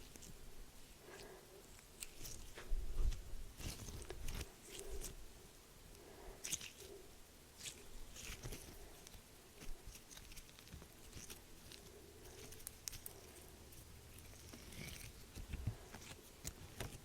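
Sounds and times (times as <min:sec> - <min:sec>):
crackling and clicking handling: 0:01.0 - 0:05.2, 0:07.6 - 0:17.0.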